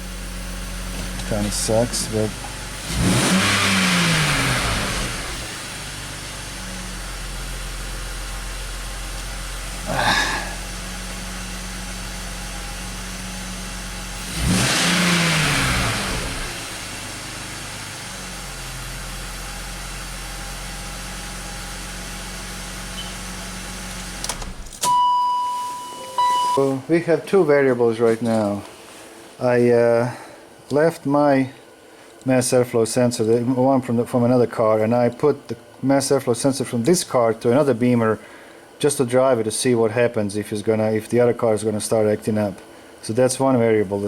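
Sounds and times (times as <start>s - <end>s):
car engine idling and revving: 0.0s - 24.8s
steady beep tone: 24.8s - 26.8s.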